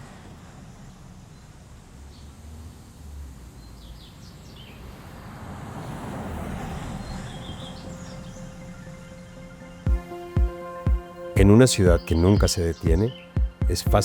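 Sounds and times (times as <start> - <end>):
low traffic rumble: 0.0 - 14.0
small birds chirping: 1.2 - 5.3, 6.5 - 14.0.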